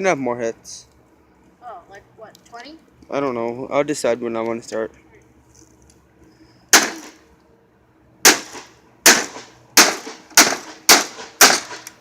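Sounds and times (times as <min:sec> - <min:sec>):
hard blows on metal casing: 0:08.2 - 0:12.0.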